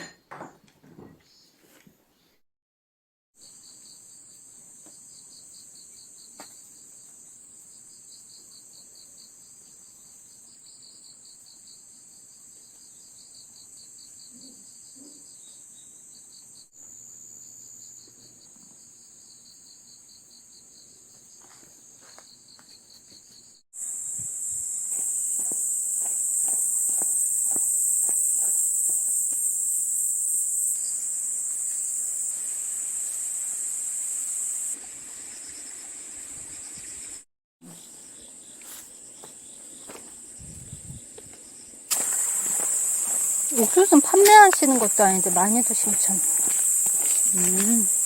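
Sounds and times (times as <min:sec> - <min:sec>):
rapid cricket chirps: 0:03.4 - 0:48.0
insects shrilling: 0:23.8 - 0:35.9, 0:41.9 - 0:48.0.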